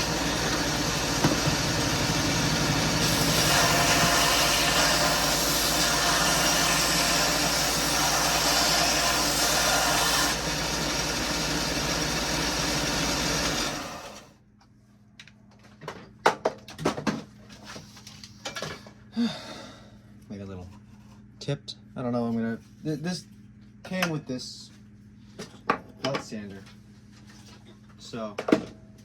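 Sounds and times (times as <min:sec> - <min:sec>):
sander motor hum: 0:00.0 - 0:14.2
gritty sanding hiss: 0:02.9 - 0:10.3.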